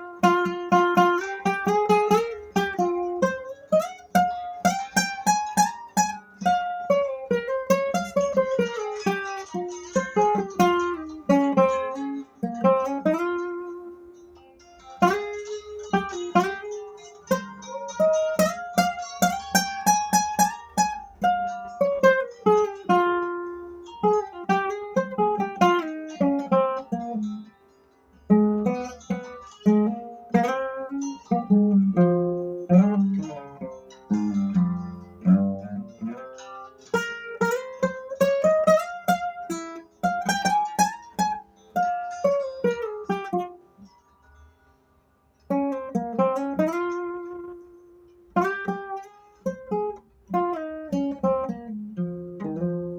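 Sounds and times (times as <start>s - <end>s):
acoustic guitar plucked runs: 0.0s - 52.9s.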